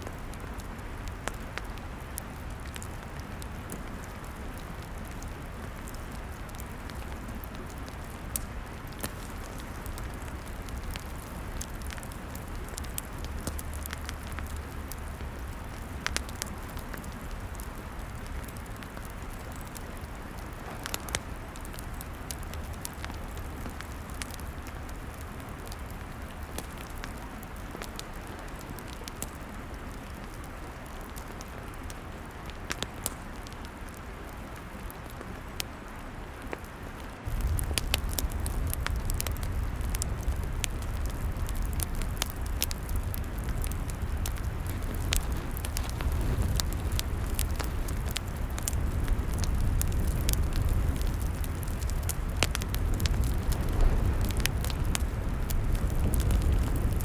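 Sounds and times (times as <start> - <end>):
log fire crackling and popping: 0.0 - 57.0
steady hiss: 37.2 - 57.0
low rumble: 37.3 - 57.0.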